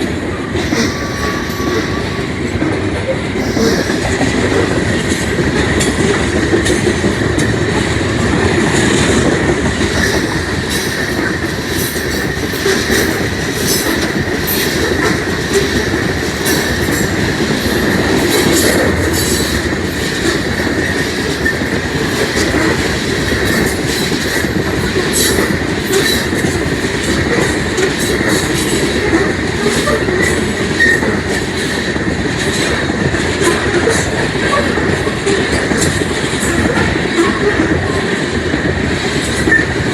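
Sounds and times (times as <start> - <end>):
train wheels rumbling on rail: 0.0 - 39.9.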